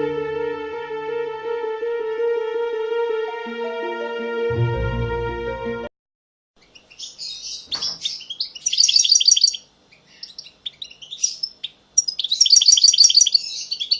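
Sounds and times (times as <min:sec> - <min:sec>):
small birds chirping: 0:06.6 - 0:13.9.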